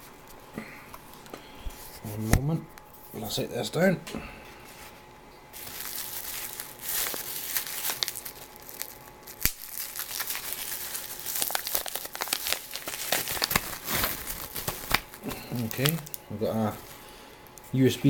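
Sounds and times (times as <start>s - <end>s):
plastic packaging crinkling: 5.5s - 17.8s.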